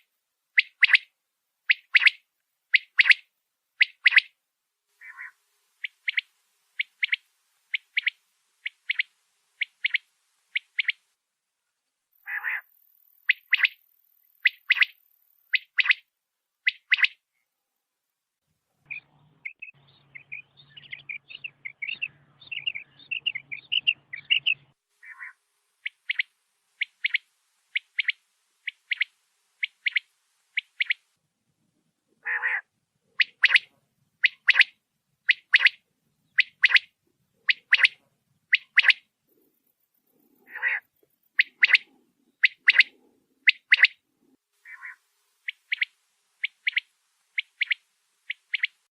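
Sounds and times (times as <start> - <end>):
quail calling: 0.6 - 1.1, 1.7 - 3.2, 3.8 - 4.3, 5.0 - 11.0, 12.2 - 12.7, 13.3 - 13.8, 14.4 - 16.0, 16.6 - 17.2, 18.9 - 31.0, 32.2 - 39.5, 40.2 - 44.0, 44.6 - 48.8.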